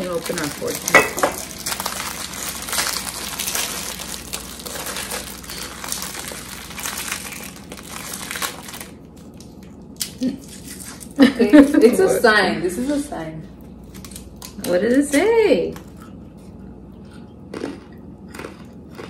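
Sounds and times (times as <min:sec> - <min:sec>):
plastic wrappers crinkling: 0:00.0 - 0:11.8
cookies crunching: 0:00.0 - 0:11.9, 0:13.6 - 0:19.0.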